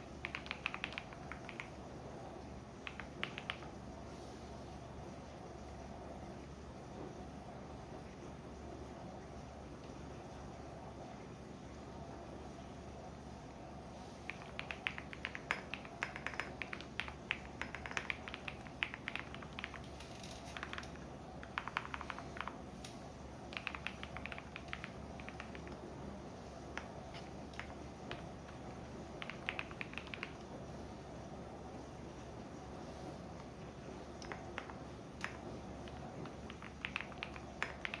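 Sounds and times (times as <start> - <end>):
keyboard typing clicks: 0.0 - 1.8, 2.8 - 3.8, 14.2 - 25.8, 26.7 - 30.5, 34.1 - 38.0
washing machine hum: 0.0 - 38.0.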